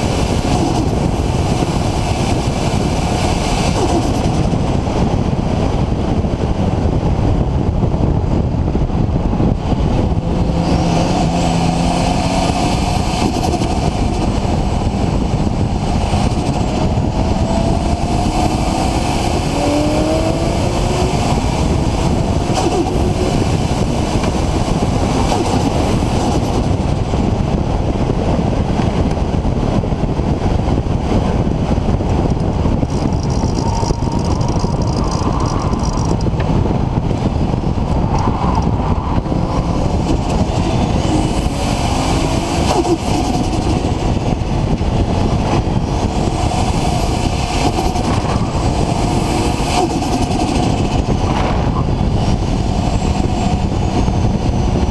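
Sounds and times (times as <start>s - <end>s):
heavy steady rushing noise: 0.0s - 54.9s
turbocharged car engine revving: 9.4s - 29.0s, 32.1s - 54.9s.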